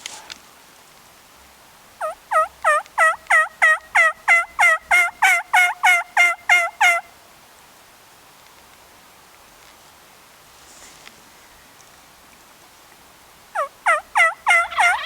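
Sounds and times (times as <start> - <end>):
turkey yelps: 2.0 - 7.1, 13.6 - 15.0.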